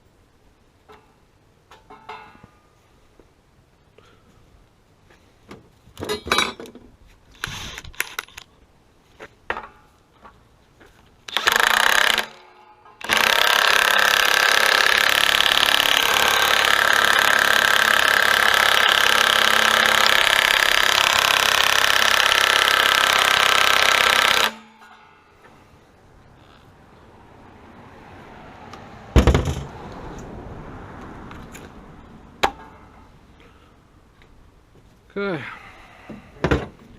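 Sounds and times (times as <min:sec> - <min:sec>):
tools knocking and clanking: 0:00.9 - 0:02.6, 0:05.5 - 0:06.9, 0:09.5 - 0:10.4, 0:32.4 - 0:33.0
impact wrench running: 0:11.3 - 0:24.7.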